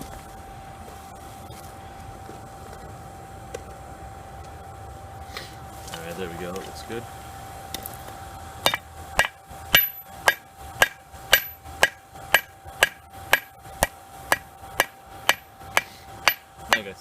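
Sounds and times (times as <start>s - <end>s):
hammer striking hot metal: 8.6s - 17.0s.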